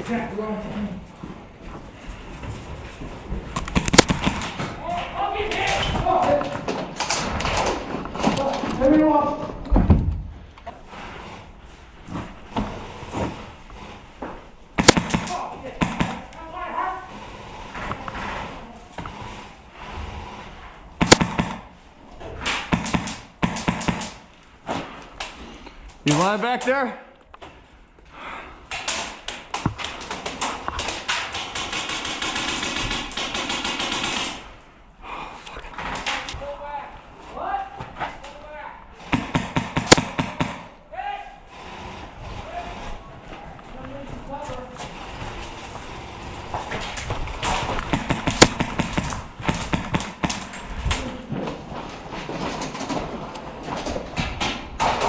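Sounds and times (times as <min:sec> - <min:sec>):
airsoft gun firing: 0:03.7 - 0:04.6, 0:14.8 - 0:16.3, 0:21.0 - 0:21.8, 0:22.5 - 0:24.3, 0:31.2 - 0:34.4, 0:39.1 - 0:40.8, 0:47.9 - 0:50.6
knocks taps and clicks: 0:14.8 - 0:16.3, 0:22.7 - 0:24.2, 0:47.8 - 0:50.6
sharp loud crack: 0:14.8 - 0:16.3.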